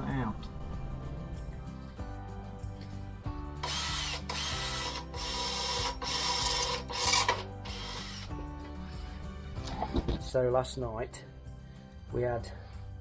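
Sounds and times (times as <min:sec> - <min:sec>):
background music: 0:00.0 - 0:13.0
power drill bursts: 0:03.6 - 0:08.3.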